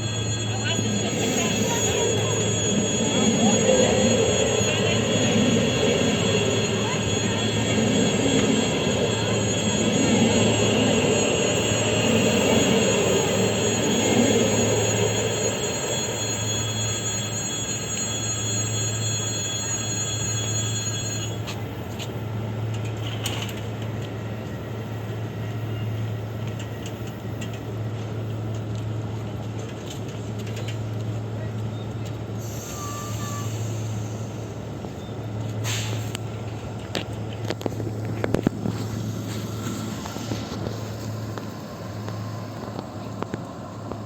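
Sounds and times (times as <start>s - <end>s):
high-pitched tones: 0.0s - 21.4s
electric train running: 0.0s - 35.6s, 36.2s - 44.0s.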